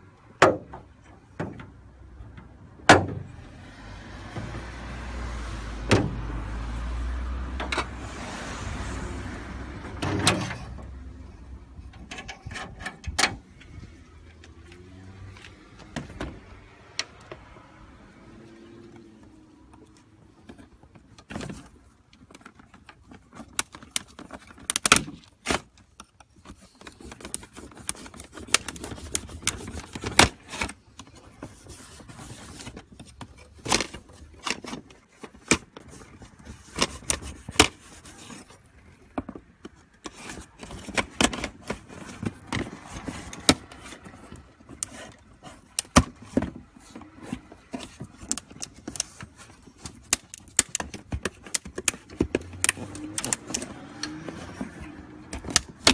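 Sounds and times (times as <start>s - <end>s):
hand tools clicking and scraping: 9.8s - 17.4s, 18.4s - 55.9s.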